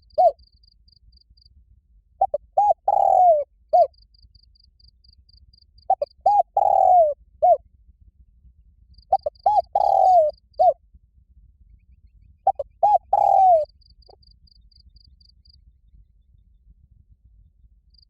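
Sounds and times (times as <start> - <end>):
dove cooing loudly: 0.0 - 0.4, 2.2 - 3.9, 5.9 - 7.6, 9.1 - 10.8, 12.5 - 13.7.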